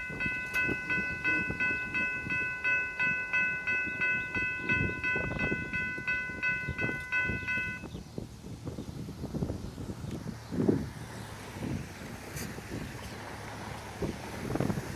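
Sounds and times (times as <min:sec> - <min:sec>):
freight train rumbling and clanking: 0:00.0 - 0:07.8
railroad crossing bell ringing: 0:00.0 - 0:07.9.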